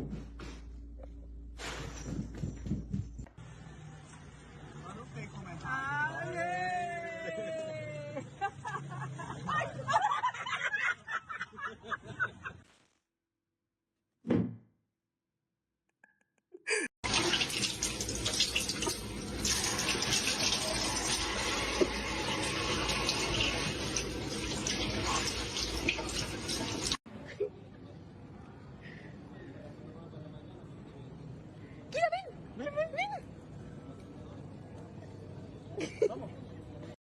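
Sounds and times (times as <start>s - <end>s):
voices or laughter: 6.9s - 12.6s, 35.7s - 36.5s
running water: 17.0s - 27.0s.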